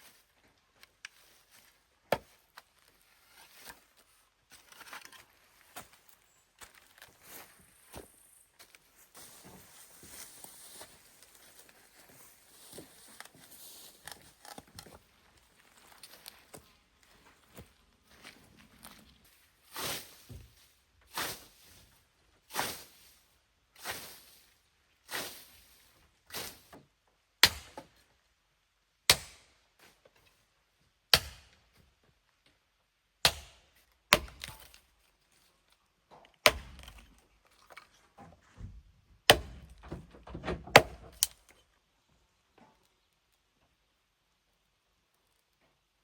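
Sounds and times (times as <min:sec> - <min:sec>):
axe chopping wood: 0:02.1 - 0:02.3, 0:27.4 - 0:27.9, 0:29.1 - 0:29.5, 0:31.1 - 0:31.6, 0:33.2 - 0:34.8, 0:36.4 - 0:37.1, 0:39.3 - 0:41.4.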